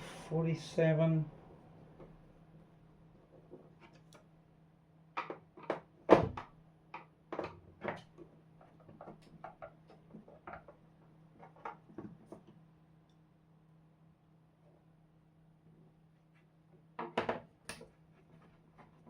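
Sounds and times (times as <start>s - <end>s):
objects knocking on a workbench: 17.0s - 17.5s.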